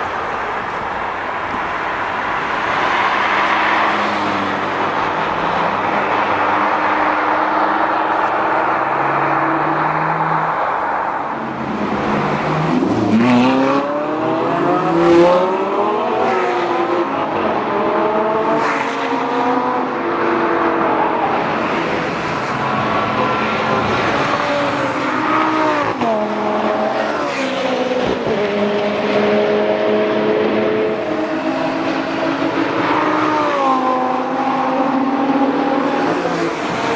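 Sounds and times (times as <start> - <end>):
car engine revving: 0.0 - 27.0.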